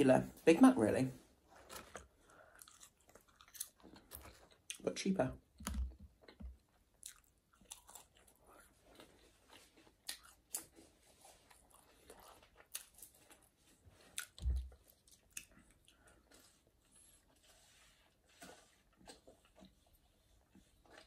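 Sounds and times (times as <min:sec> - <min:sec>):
chewing with wet mouth clicks: 0:01.7 - 0:04.8, 0:05.6 - 0:10.9, 0:11.5 - 0:16.6.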